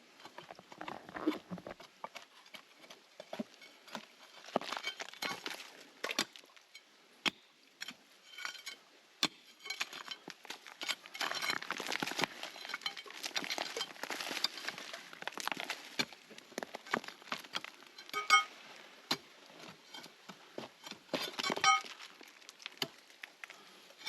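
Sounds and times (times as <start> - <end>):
hand tools scraping on stone: 7.3 - 14.7.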